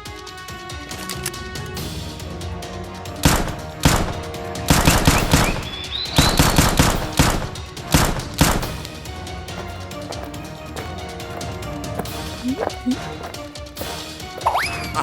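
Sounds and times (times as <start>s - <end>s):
background music: 0.0s - 15.0s
gunshots: 3.2s - 8.8s.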